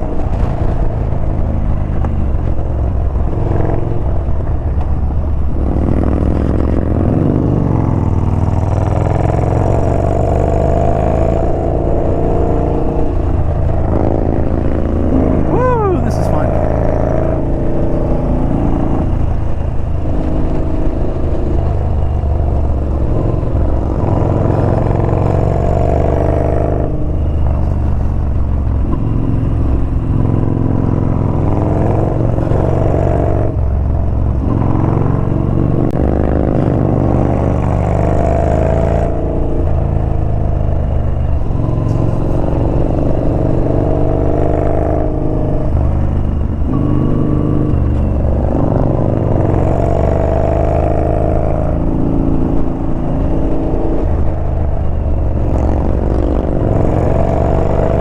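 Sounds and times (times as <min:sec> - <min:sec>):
motorcycle engine revving: 0:29.2 - 0:58.0.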